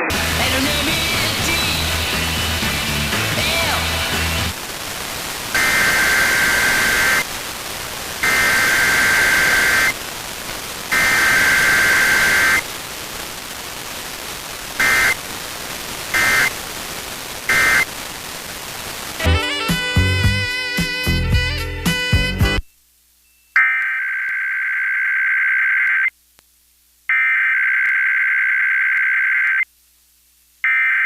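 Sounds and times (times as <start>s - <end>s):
radio static hiss: 0.0s - 21.2s
two-tone digital data bursts: 5.6s - 7.3s, 8.2s - 10.0s, 10.9s - 12.6s, 14.8s - 15.2s, 16.2s - 16.6s, 17.5s - 17.9s.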